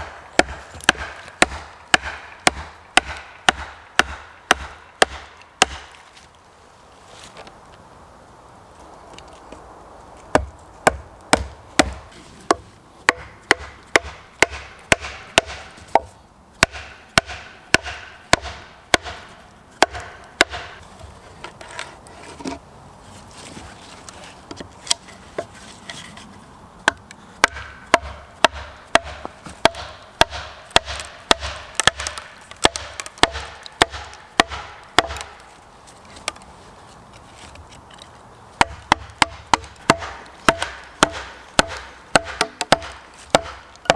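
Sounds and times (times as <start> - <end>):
axe chopping wood: 0.0 - 6.0, 10.3 - 20.8, 26.8 - 35.4, 38.6 - 43.9.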